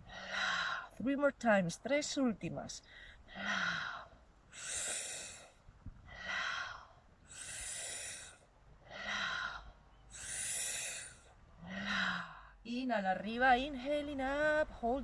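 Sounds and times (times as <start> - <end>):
woman rhythmic mouth breathing: 6.2 - 12.5.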